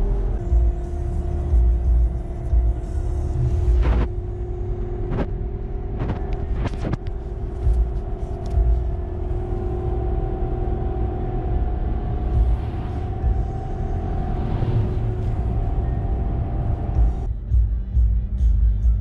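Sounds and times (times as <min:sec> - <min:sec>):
road and engine rumble in truck cab: 0:00.0 - 0:19.0.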